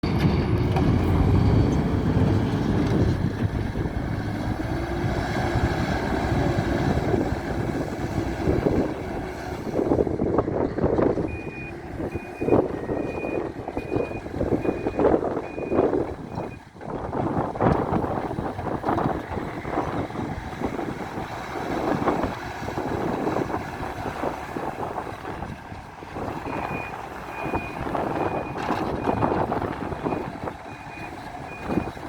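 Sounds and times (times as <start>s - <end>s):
diesel engine running: 0.0s - 32.0s
reversing alarm beeping: 11.3s - 16.6s.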